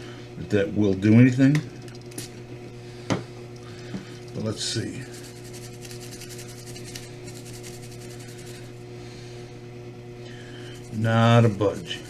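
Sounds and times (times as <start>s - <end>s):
electrical hum: 0.0s - 12.0s
scratchy rubbing on circuit board: 5.1s - 8.8s, 10.7s - 12.0s.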